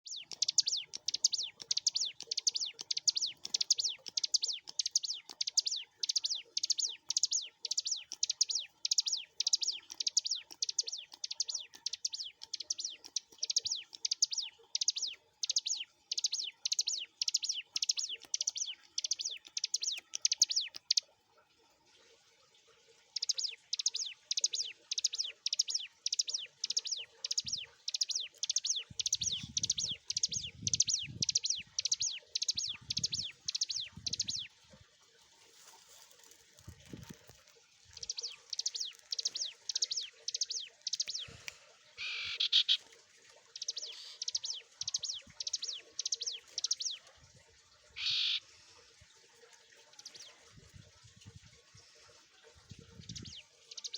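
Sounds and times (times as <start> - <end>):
bird singing sharp high notes: 42.0 - 42.8, 48.0 - 48.4.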